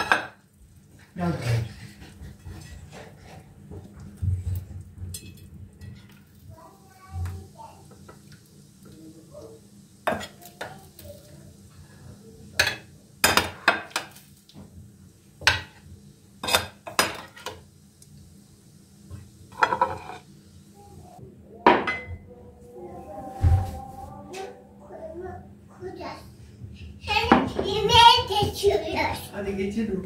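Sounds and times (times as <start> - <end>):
dishes and cutlery clinking: 0.0 - 0.4, 1.4 - 6.3, 10.1 - 10.7, 12.6 - 14.3, 15.4 - 15.8, 16.4 - 17.6, 19.5 - 20.3, 21.6 - 22.3.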